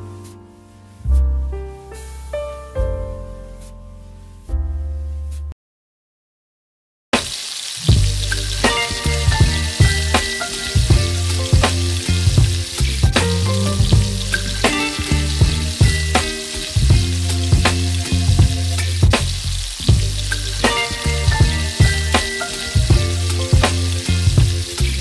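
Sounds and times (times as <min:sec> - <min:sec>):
background music with beat: 0:00.0 - 0:04.6, 0:07.2 - 0:25.0
food sizzling in hot oil: 0:07.2 - 0:25.0.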